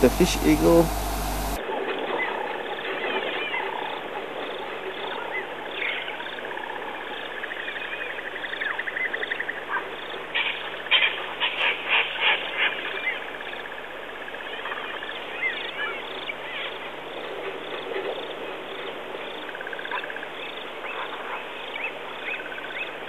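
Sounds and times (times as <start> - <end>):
harsh repeated bird calls: 0.0 - 16.9
birds chirping: 0.0 - 23.0.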